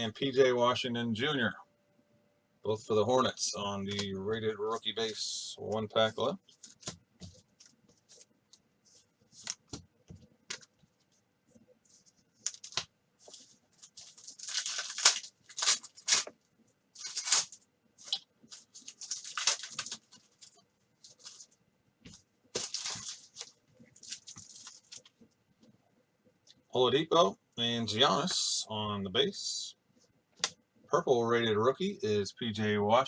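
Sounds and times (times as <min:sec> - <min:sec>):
cards being handled: 0:06.5 - 0:11.2, 0:11.9 - 0:16.4, 0:17.0 - 0:25.1
wrapper tearing and crinkling: 0:13.8 - 0:16.3, 0:17.0 - 0:20.5, 0:22.6 - 0:25.1.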